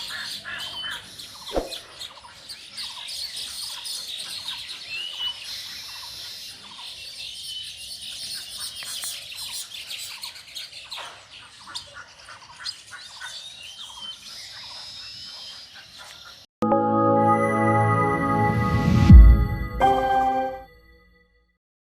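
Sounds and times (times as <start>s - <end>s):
birds chirping: 0.0s - 16.5s.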